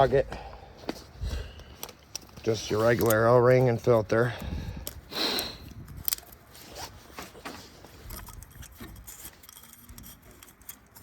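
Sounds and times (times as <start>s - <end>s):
plastic parts scraping and tapping: 5.9s - 11.0s.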